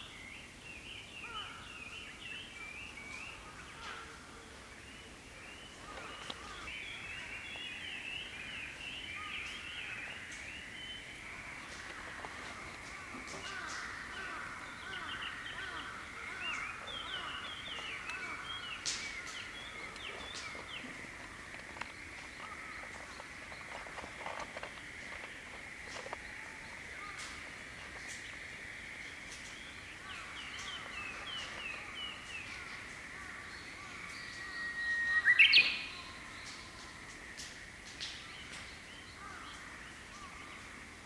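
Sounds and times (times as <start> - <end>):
songbirds chirping and twittering: 0.0 - 41.0
bird whistling song: 34.5 - 36.0.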